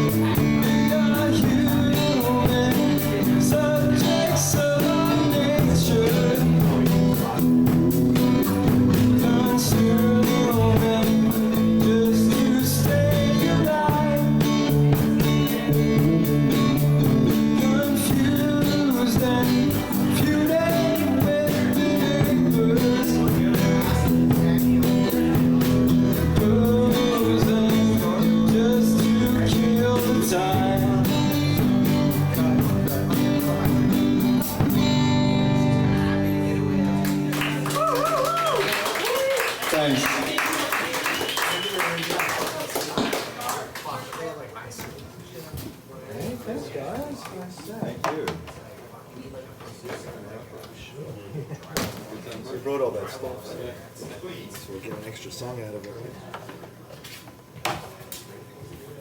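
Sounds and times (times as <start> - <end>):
steady drum beat: 0.0 - 36.2
electric guitar: 0.0 - 39.2.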